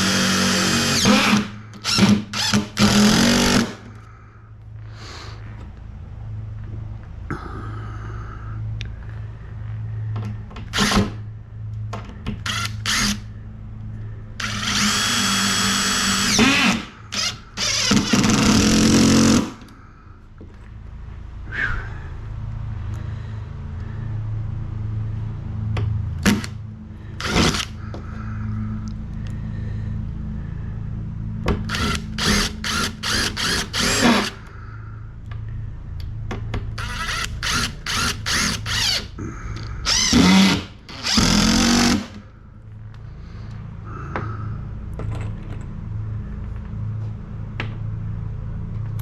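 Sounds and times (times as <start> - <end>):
power drill running: 0.0 - 3.9, 10.7 - 11.1, 12.4 - 13.2, 14.4 - 19.7, 27.2 - 27.7, 31.7 - 34.4, 36.8 - 39.1, 39.8 - 42.2
low hum: 0.0 - 49.0.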